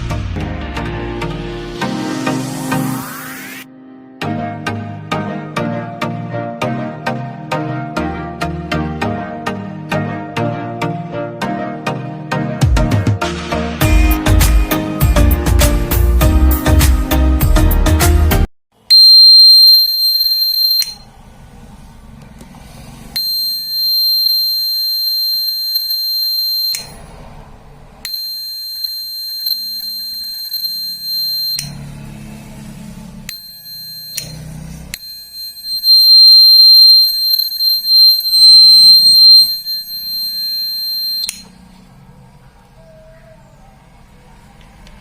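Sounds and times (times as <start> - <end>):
high-pitched buzzer beep: 18.9 - 21.0, 23.2 - 27.0, 28.1 - 31.8, 33.3 - 41.5.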